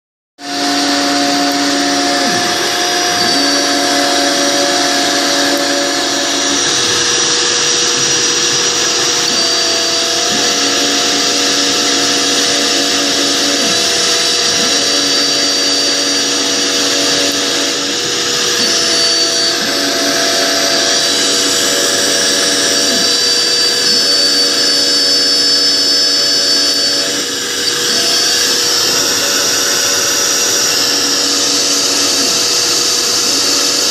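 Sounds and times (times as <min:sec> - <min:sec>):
router spindle milling: 0:00.4 - 0:33.9
vacuum cleaner running: 0:00.4 - 0:33.9.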